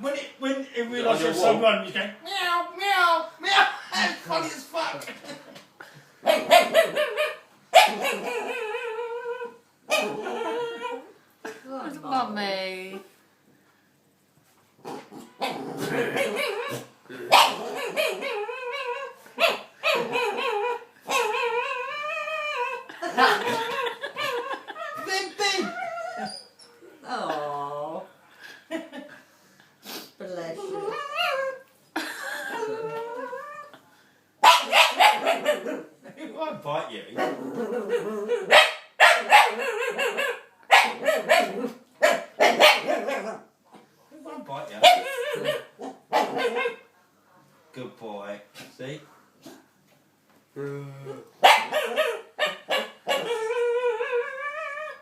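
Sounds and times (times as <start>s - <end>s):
dog yelping: 6.3s - 11.1s, 15.4s - 22.9s, 24.1s - 26.8s, 30.6s - 31.6s, 34.4s - 35.9s, 37.2s - 43.4s, 44.8s - 46.9s, 51.4s - 55.0s
dog whine-growling: 7.9s - 11.1s, 14.8s - 19.2s, 19.9s - 22.9s, 25.6s - 26.8s, 30.6s - 31.6s, 37.1s - 38.5s, 53.1s - 55.0s.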